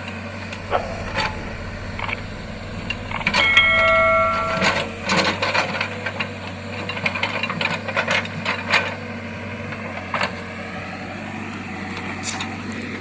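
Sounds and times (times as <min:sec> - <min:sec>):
diesel engine running: 0:00.0 - 0:08.0
machine clanking and rattling: 0:00.4 - 0:08.8.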